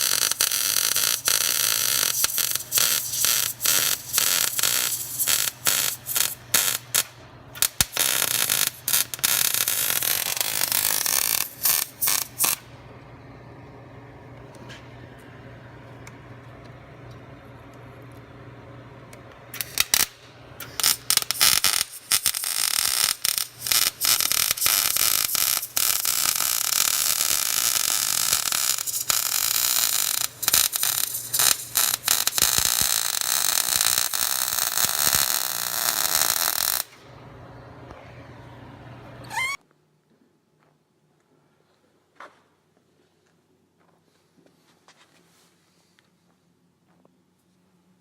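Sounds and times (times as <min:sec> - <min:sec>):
welding arc crackling and hissing: 0:00.0 - 0:12.7, 0:19.6 - 0:37.0
welder electrical hum: 0:00.0 - 0:39.6.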